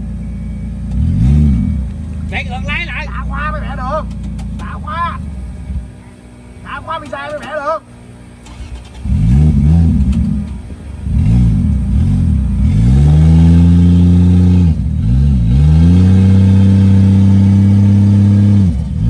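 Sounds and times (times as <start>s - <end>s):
truck engine revving: 0.0s - 19.0s.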